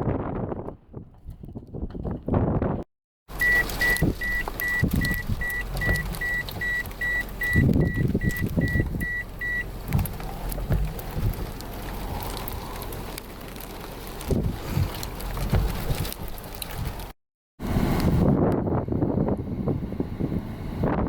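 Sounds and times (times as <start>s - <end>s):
moving vehicle rumble: 0.0s - 21.0s
high electronic beeps: 3.4s - 9.6s.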